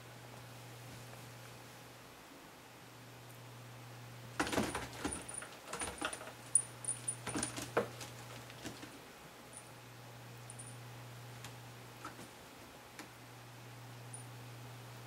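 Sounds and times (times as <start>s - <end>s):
faint steady hum: 0.0s - 15.0s
small metallic jingles: 5.0s - 8.4s, 10.5s - 10.8s.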